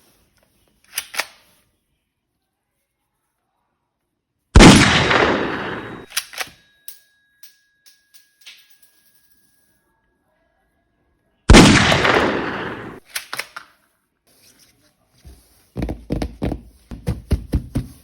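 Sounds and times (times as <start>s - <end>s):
loud gunshot echoing: 4.6s - 6.1s, 11.5s - 13.0s.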